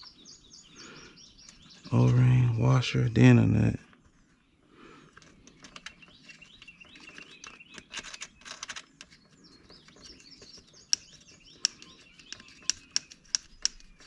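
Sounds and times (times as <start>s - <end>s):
birds chirping: 0.0s - 14.0s
small metal clicks and rattling: 5.1s - 14.0s.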